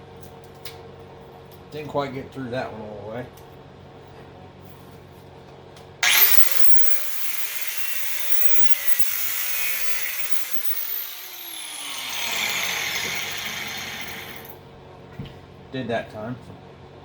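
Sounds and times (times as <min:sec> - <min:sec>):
grinder cutting steel: 0:06.0 - 0:14.6.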